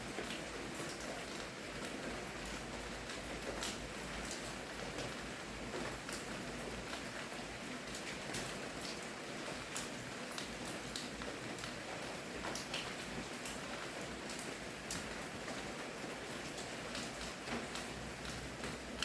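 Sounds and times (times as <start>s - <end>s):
raindrops ticking close by: 0.0s - 19.0s.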